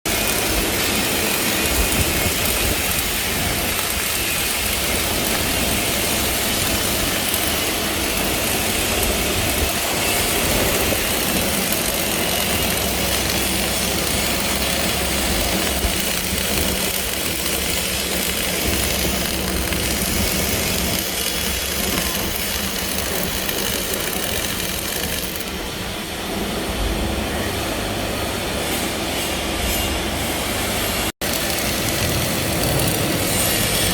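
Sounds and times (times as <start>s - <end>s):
welding arc crackling and hissing: 0.1s - 26.5s, 29.2s - 33.9s.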